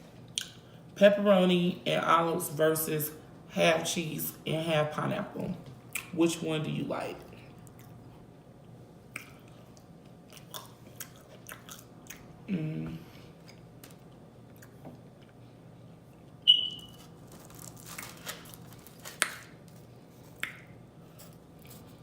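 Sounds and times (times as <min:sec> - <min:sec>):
chewing pizza: 0:07.4 - 0:08.2, 0:09.0 - 0:22.0
low vocal hum: 0:12.4 - 0:13.4.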